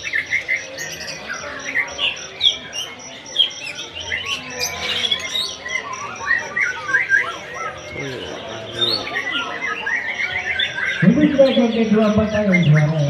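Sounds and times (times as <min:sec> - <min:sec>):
birds singing chirps and whistles: 0:00.0 - 0:13.0.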